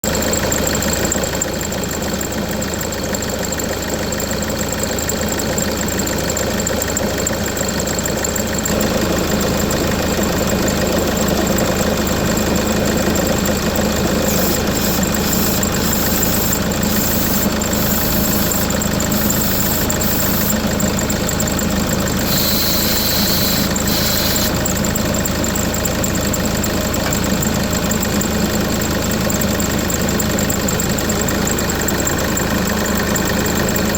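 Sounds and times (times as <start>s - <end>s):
diesel engine idling: 0.1s - 33.9s
high hiss: 14.3s - 20.6s, 22.2s - 24.6s.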